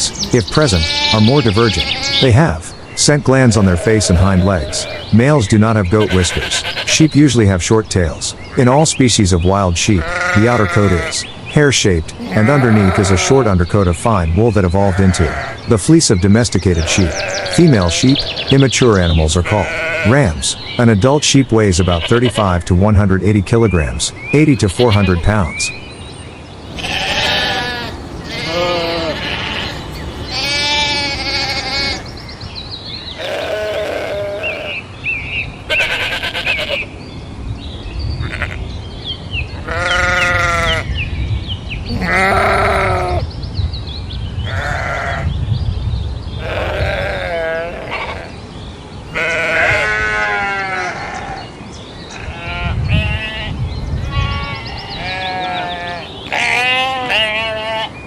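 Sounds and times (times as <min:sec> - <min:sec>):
sheep bleating: 0:00.7 - 0:02.3, 0:03.6 - 0:05.1, 0:06.0 - 0:07.0, 0:10.0 - 0:11.2, 0:12.2 - 0:13.5, 0:14.9 - 0:15.6, 0:16.8 - 0:18.6, 0:19.4 - 0:20.2, 0:26.7 - 0:32.1, 0:33.2 - 0:34.8, 0:35.7 - 0:36.9, 0:39.6 - 0:40.8, 0:41.9 - 0:43.2, 0:44.5 - 0:45.3, 0:46.4 - 0:48.3, 0:49.1 - 0:51.4, 0:52.2 - 0:57.9.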